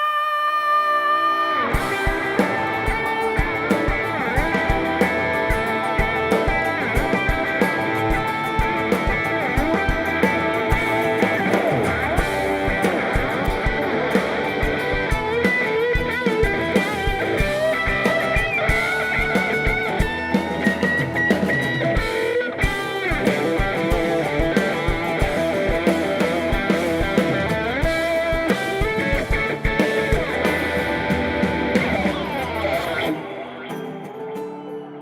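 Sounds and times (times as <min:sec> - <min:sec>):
lead electric guitar: 0:00.0 - 0:35.0
bass guitar: 0:01.5 - 0:33.6
steady drum beat: 0:01.7 - 0:33.3.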